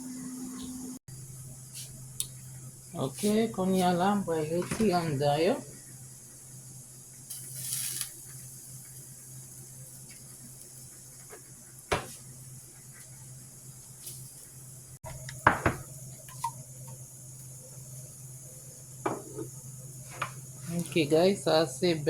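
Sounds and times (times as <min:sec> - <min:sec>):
steady low hum: 0:08.2 - 0:22.0.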